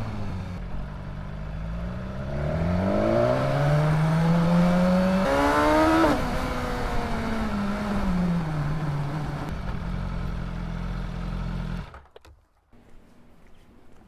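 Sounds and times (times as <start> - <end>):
motorcycle engine revving: 0.0 - 12.0.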